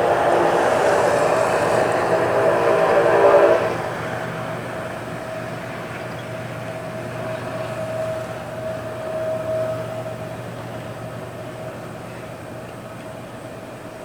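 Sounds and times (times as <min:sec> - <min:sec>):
locomotive horn chord: 0:00.0 - 0:04.4
steady tone: 0:00.0 - 0:04.8
freight train passing: 0:00.0 - 0:14.0.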